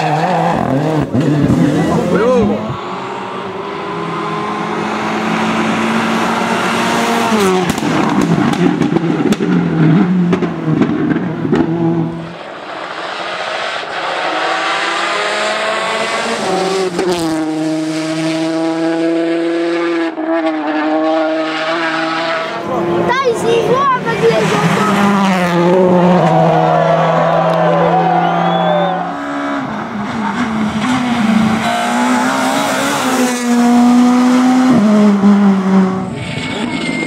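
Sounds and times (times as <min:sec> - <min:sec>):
rally car engines revving: 0:00.0 - 0:37.0
engine cracks and pops: 0:07.6 - 0:09.6, 0:10.2 - 0:11.7.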